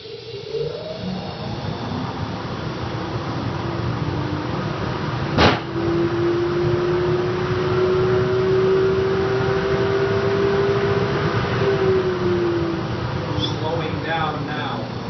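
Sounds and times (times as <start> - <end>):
dust collector humming: 0.0 - 15.0
loud clank of barrel bottom: 5.4 - 5.7.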